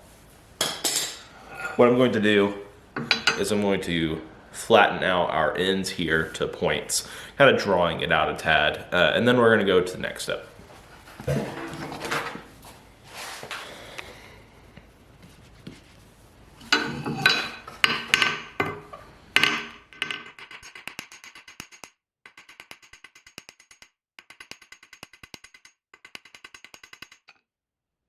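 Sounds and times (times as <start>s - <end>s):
hammer striking wire on anvil: 3.0s - 3.6s, 16.7s - 27.3s.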